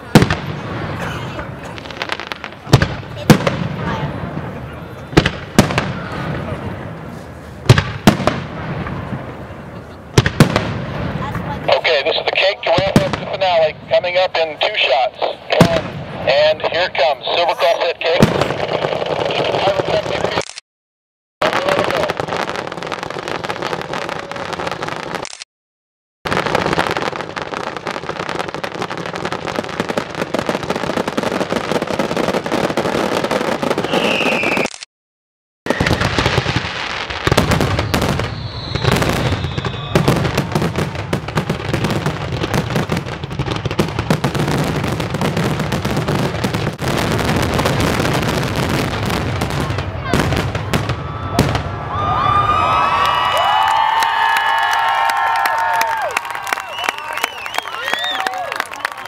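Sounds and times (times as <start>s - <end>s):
fireworks bursting and crackling: 0.0s - 20.6s, 21.4s - 25.5s, 26.3s - 34.9s, 35.7s - 59.0s
crowd cheering: 50.8s - 59.0s.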